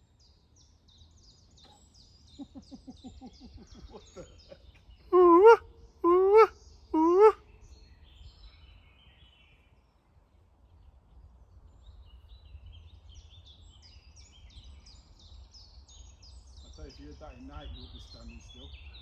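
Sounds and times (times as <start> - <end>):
songbirds chirping: 4.9 - 7.4.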